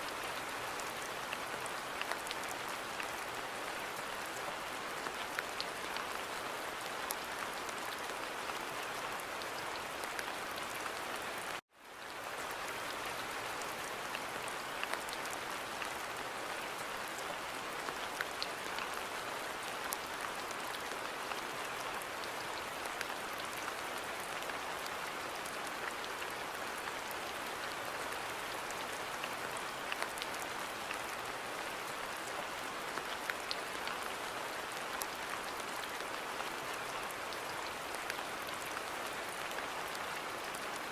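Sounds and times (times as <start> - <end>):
steady rain hiss: 0.0 - 40.9.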